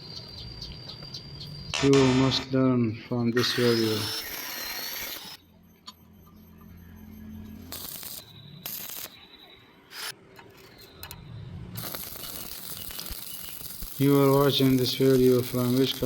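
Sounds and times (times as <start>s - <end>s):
welding arc crackling: 3.4s - 5.4s, 7.6s - 11.2s, 11.8s - 16.0s.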